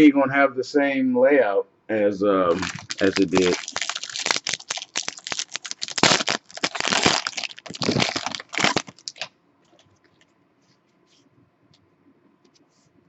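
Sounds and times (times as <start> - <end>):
trading cards and wrappers rustling: 2.5 - 9.9.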